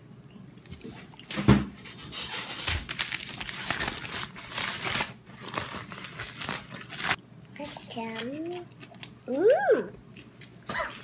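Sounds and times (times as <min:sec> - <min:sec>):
crinkling and crumpling: 0:00.6 - 0:08.6.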